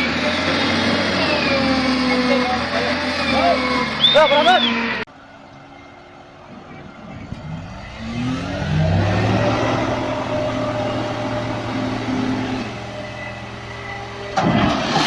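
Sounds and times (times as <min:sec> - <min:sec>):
engine revving: 0:00.0 - 0:05.0, 0:07.2 - 0:15.0
loud crash: 0:14.2 - 0:15.0.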